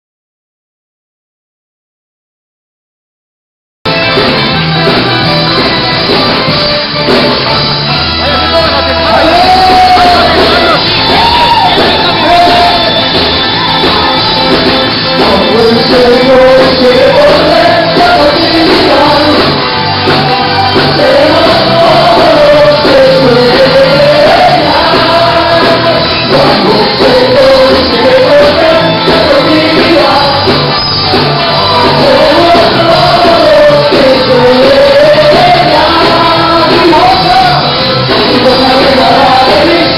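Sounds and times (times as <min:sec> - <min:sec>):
band music: 0:03.9 - 0:39.9
person singing: 0:08.1 - 0:39.9.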